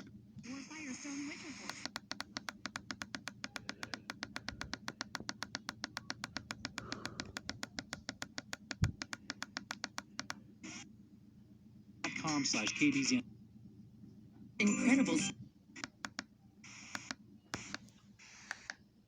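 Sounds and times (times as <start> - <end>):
rapid sharp clicks: 1.6 - 10.4, 15.8 - 18.8.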